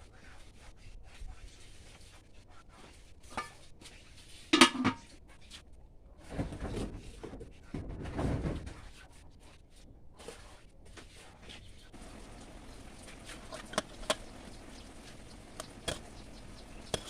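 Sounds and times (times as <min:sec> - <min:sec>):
kitchenware scraping and shuffling: 0:04.3 - 0:05.1, 0:12.0 - 0:17.0
kitchenware click: 0:13.5 - 0:14.3, 0:15.5 - 0:17.0.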